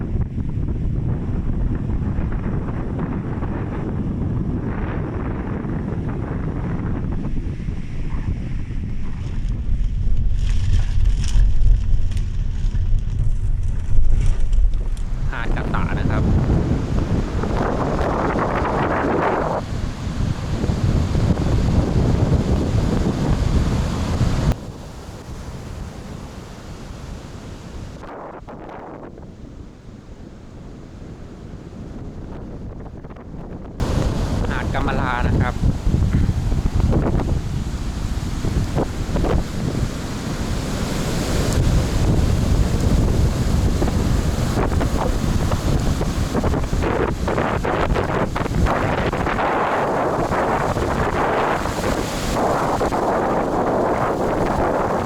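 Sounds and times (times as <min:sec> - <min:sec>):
strong wind buffeting microphone: 0:00.0 - 0:55.0.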